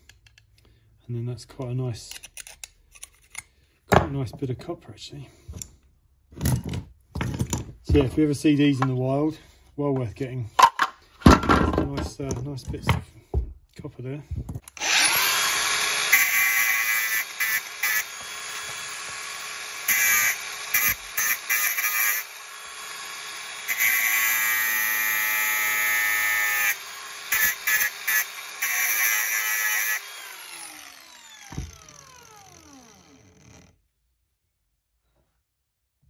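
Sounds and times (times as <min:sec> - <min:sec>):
electric grinder grinding metal: 0:14.7 - 0:33.7
grinder winding down whine: 0:14.7 - 0:33.7.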